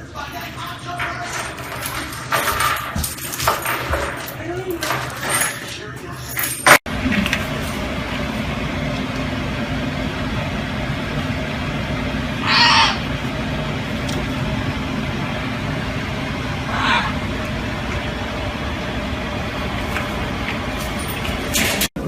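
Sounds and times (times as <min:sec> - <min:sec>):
vehicle hum in motion: 0:06.8 - 0:22.0
harsh parrot squawk: 0:12.4 - 0:13.0, 0:16.7 - 0:17.2.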